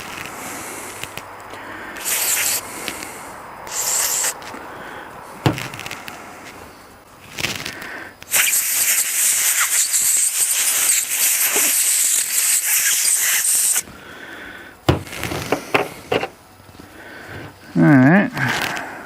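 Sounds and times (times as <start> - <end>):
pressurized spray hissing: 2.0 - 4.5, 7.3 - 13.9.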